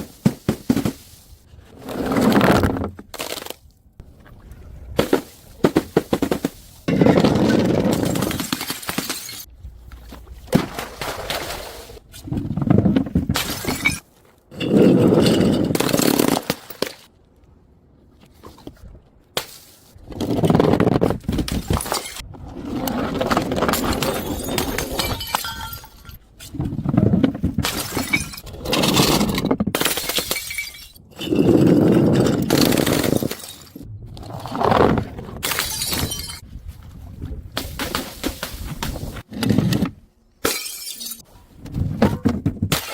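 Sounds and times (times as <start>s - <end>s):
glass bottles smashing: 6.9s - 9.5s, 23.8s - 26.2s, 27.7s - 29.0s, 29.8s - 33.8s, 35.4s - 36.4s, 40.4s - 41.2s.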